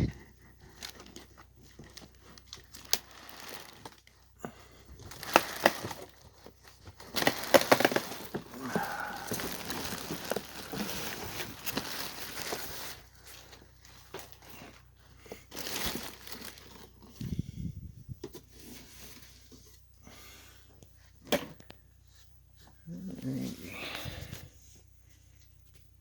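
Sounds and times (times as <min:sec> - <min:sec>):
plastic wrapping crinkling: 0:00.6 - 0:17.3.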